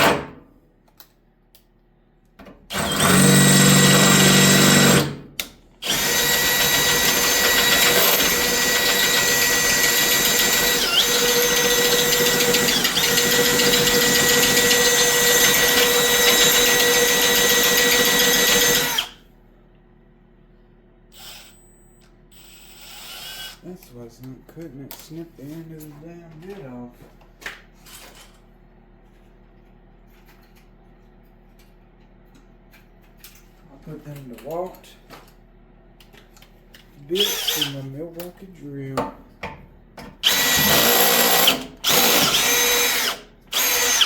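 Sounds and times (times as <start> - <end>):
electric drill running: 2.7 - 5.2, 5.8 - 19.2, 21.1 - 21.6, 22.3 - 23.6, 37.2 - 37.7, 40.2 - 44.0.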